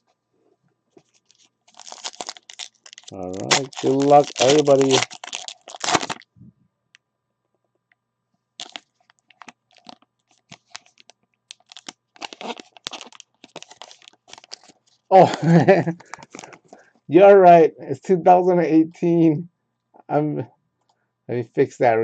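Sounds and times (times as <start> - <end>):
plastic wrapper crinkling and tearing: 1.0 - 6.3, 8.6 - 16.9.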